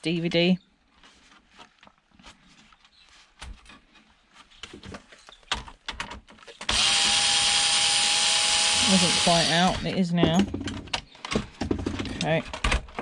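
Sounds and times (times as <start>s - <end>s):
cordless drill running: 6.6s - 10.0s.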